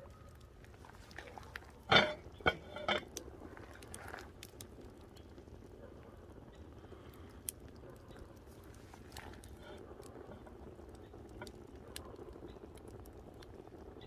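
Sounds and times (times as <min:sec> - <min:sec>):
firewood crackling: 0:00.0 - 0:14.0
metal clanking with ring: 0:01.9 - 0:03.1.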